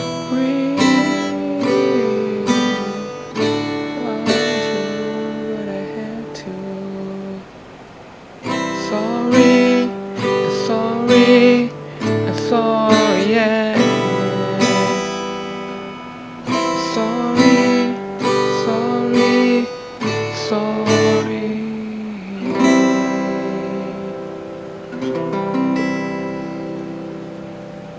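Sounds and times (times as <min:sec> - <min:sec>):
acoustic guitar chords strummed: 0:00.0 - 0:27.9.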